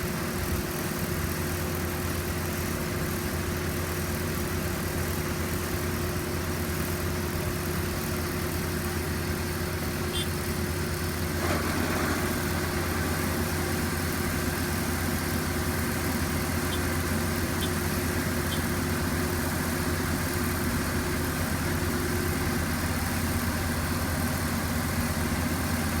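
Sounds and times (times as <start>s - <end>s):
combine harvester engine drone: 0.0s - 26.0s.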